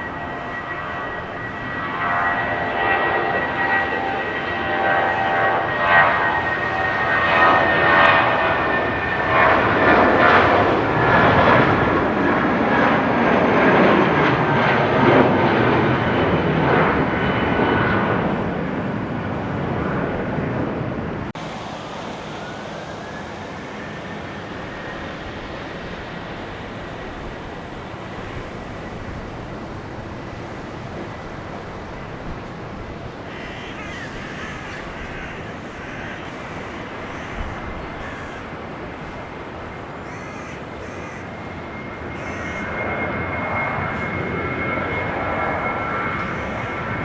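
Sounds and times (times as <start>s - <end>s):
airliner jet noise with whine: 0.0s - 47.0s
bird calling: 33.3s - 38.6s, 40.0s - 41.4s, 42.1s - 42.8s, 46.1s - 47.0s.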